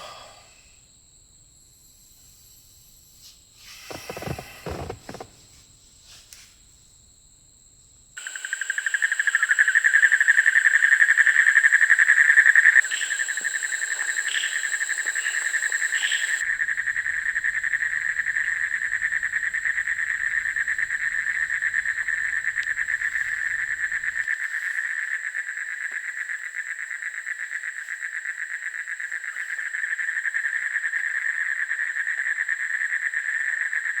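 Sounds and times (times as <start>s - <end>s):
insects trilling: 0.0s - 7.0s, 8.1s - 34.0s
high insect whine: 0.0s - 31.3s.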